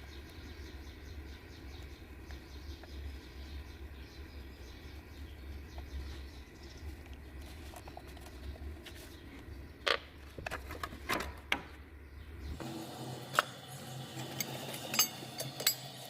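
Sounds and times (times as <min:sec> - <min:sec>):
steady low hum: 0:00.0 - 0:16.0
tools clicking and knocking: 0:14.9 - 0:15.9.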